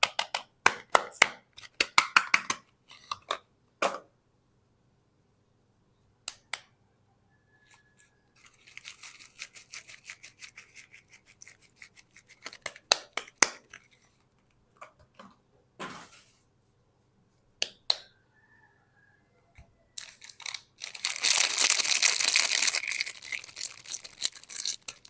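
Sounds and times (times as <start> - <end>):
wrapper rustling: 8.4 - 10.0, 20.0 - 25.0.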